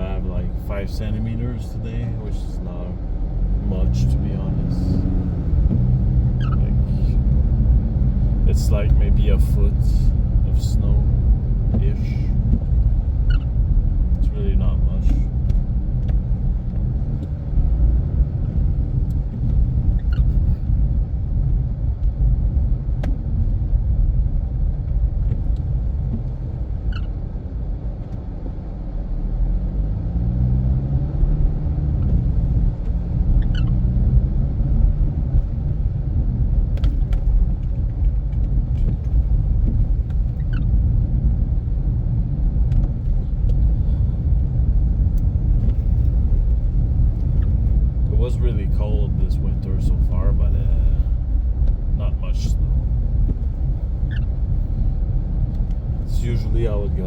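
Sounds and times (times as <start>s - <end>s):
car engine rumble: 0.0s - 57.0s
tyres on the road: 0.0s - 57.0s
faint short squeaks: 6.4s - 6.8s, 19.9s - 20.6s, 33.4s - 33.9s.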